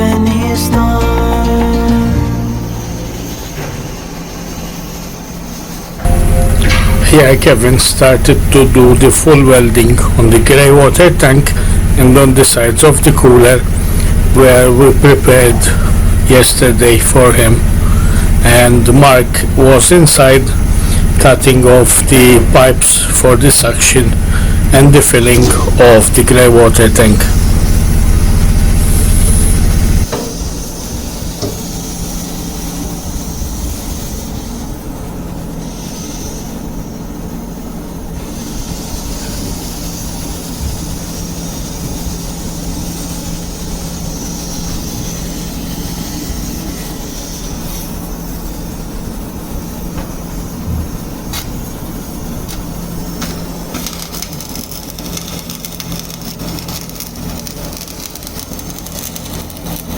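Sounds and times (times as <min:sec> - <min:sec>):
high hiss: 0:00.0 - 0:59.9
machinery low hum: 0:00.0 - 0:59.9
loud low rumble: 0:06.0 - 0:10.2
scattered clicks: 0:53.8 - 0:59.9.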